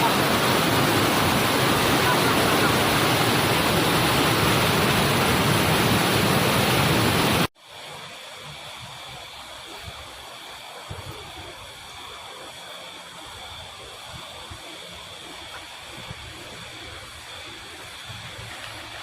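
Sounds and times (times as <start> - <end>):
waterfall rushing: 0.0 - 8.0.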